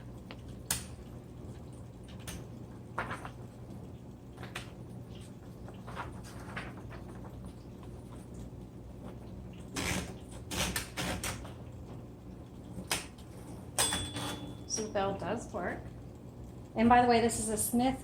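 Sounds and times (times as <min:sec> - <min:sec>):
electric typewriter motor hum: 0:09.7 - 0:11.5.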